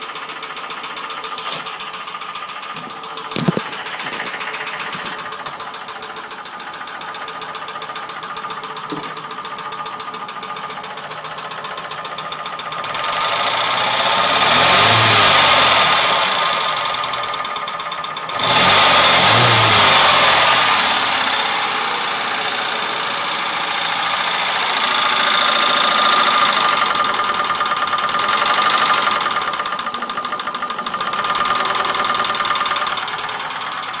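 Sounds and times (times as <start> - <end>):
car engine revving with a knock: 2.7 - 5.7, 18.3 - 33.2.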